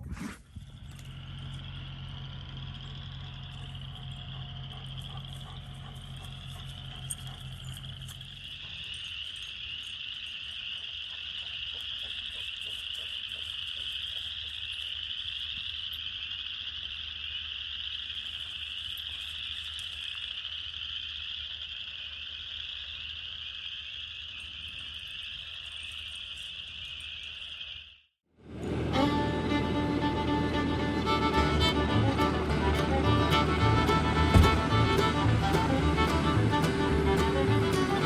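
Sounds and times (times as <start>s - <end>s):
faint low hum: 0.0s - 14.9s, 28.5s - 38.0s
frogs chorus trilling: 0.7s - 28.0s.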